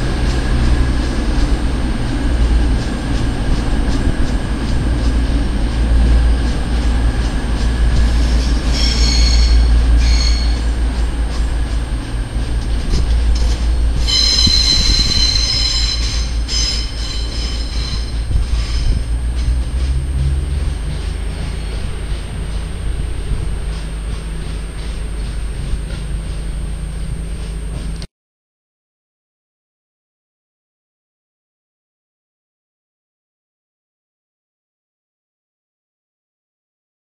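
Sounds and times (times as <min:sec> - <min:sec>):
diesel train rumbling: 0:00.0 - 0:28.1
wheel flanges squealing: 0:05.6 - 0:28.0.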